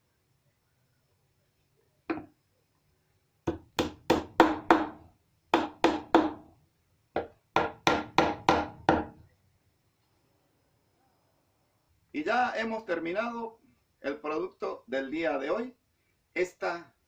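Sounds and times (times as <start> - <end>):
hammer striking wood: 3.4 - 6.5, 7.2 - 9.2.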